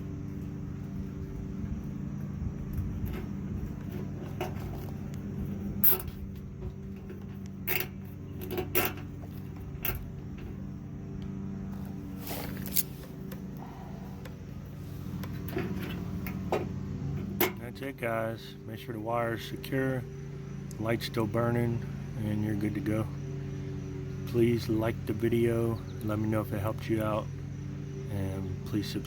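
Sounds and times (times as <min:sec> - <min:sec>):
steady low hum: 0:00.0 - 0:29.0
short rustles of wiring: 0:11.7 - 0:13.4.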